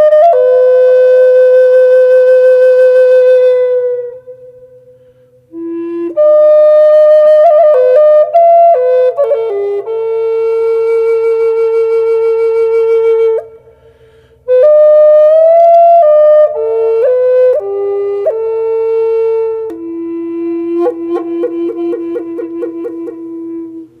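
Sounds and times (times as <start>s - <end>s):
solo flute melody: 0.0s - 13.8s, 14.4s - 24.0s.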